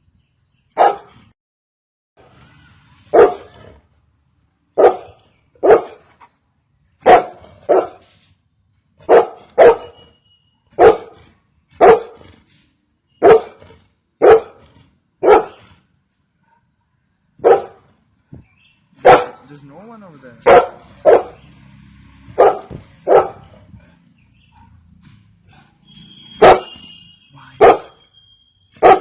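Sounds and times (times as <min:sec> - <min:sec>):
dog barking: 0:00.8 - 0:01.2, 0:03.1 - 0:03.6, 0:04.8 - 0:06.1, 0:07.0 - 0:08.0, 0:09.0 - 0:10.1, 0:10.7 - 0:11.2, 0:11.8 - 0:12.2, 0:13.2 - 0:14.6, 0:15.2 - 0:15.7, 0:17.4 - 0:17.9, 0:19.0 - 0:19.5, 0:20.4 - 0:21.5, 0:22.3 - 0:24.9, 0:26.4 - 0:26.9, 0:27.6 - 0:28.0, 0:28.8 - 0:29.0.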